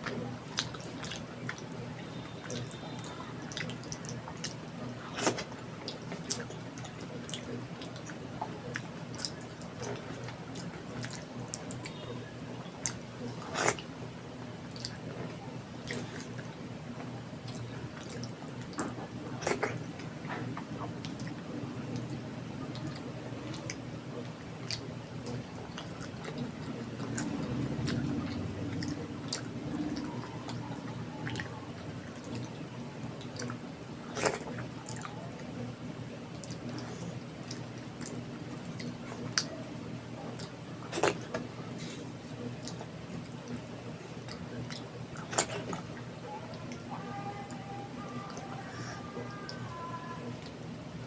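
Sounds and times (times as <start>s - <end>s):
wet chewing: 0.0s - 13.9s
low steady hum: 0.0s - 51.0s.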